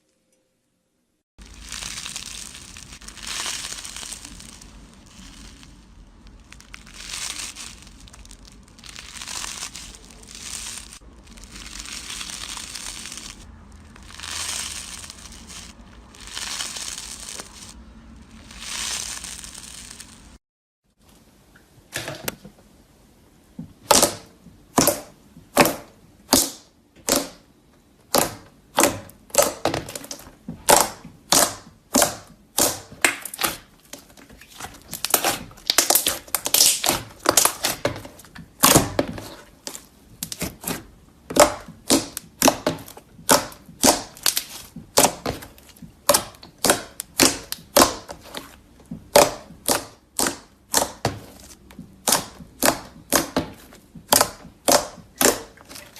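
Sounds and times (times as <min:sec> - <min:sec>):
slime squeezed with crisp pops: 0:28.1 - 0:40.8, 0:41.4 - 0:55.9.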